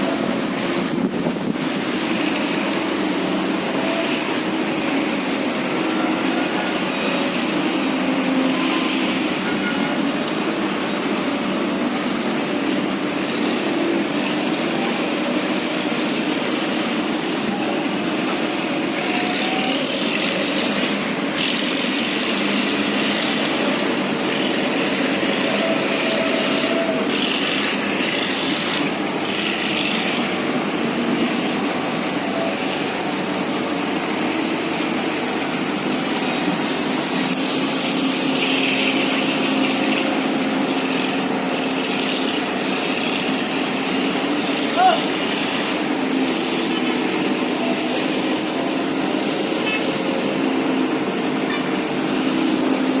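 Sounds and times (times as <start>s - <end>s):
heavy diesel machinery running: 0.0s - 53.0s.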